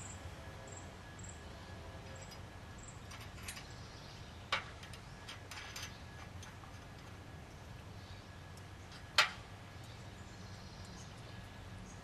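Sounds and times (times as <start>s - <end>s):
metal nuts and bolts clinking: 3.1s - 3.8s, 4.5s - 7.2s.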